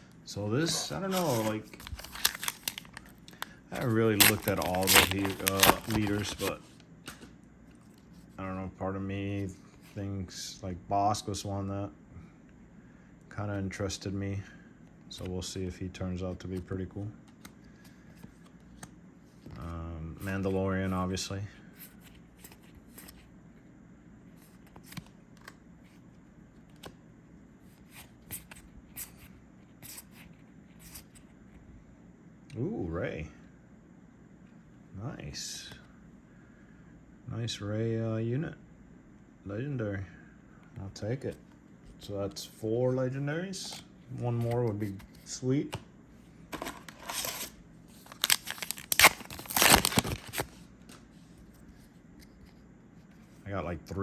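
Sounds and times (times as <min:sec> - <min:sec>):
wrapper tearing and crinkling: 0:01.0 - 0:06.6, 0:46.6 - 0:50.6.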